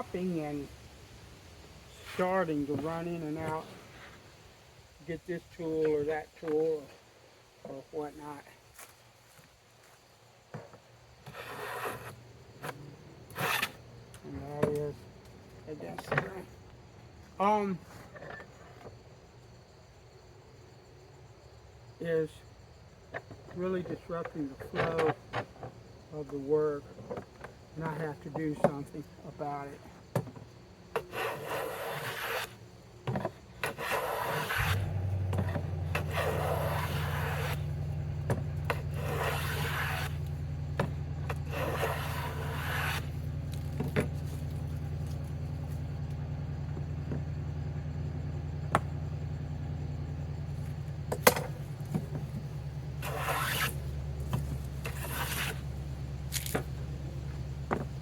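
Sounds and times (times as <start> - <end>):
hand tool scraping wood: 2.0 - 4.2, 10.6 - 15.0, 23.2 - 29.7, 30.3 - 45.9, 50.6 - 58.0
steady low hum: 30.7 - 58.0.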